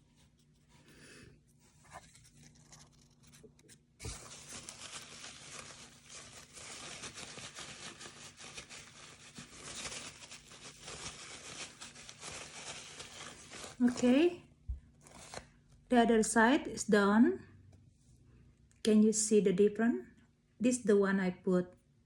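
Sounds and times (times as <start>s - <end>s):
cotton swab scratchy rubbing: 0.0s - 14.2s
faint handling sounds: 0.0s - 15.8s.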